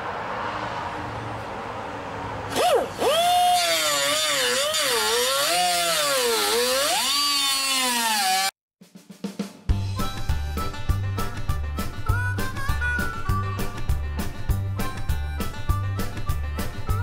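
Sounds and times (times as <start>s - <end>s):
power tool cutting sheet metal: 2.5s - 8.6s.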